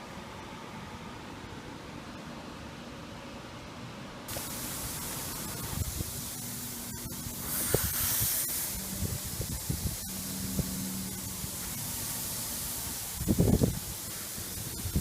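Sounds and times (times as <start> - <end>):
high spraying hiss: 4.3 - 15.0
steady hiss: 4.3 - 15.0.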